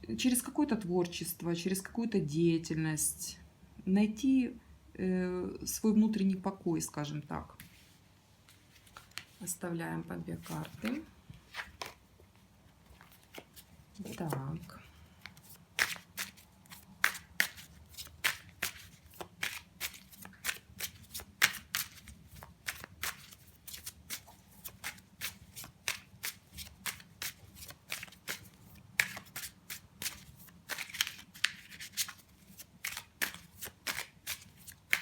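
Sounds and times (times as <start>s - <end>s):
cards being shuffled: 8.5s - 9.5s, 10.4s - 12.1s, 12.8s - 35.0s.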